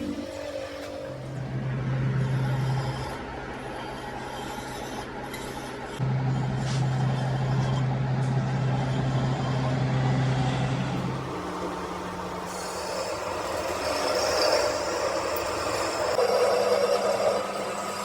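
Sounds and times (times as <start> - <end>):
machine hum: 0.0 - 18.0.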